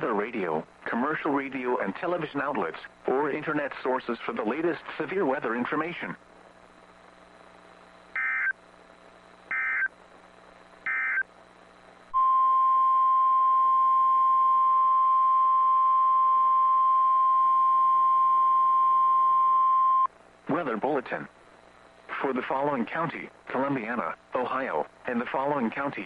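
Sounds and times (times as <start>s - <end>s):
digital data bursts: 8.2s - 8.6s, 9.5s - 9.9s, 10.8s - 11.2s
warning alarm tone: 8.2s - 8.6s, 9.5s - 9.9s, 10.8s - 11.3s.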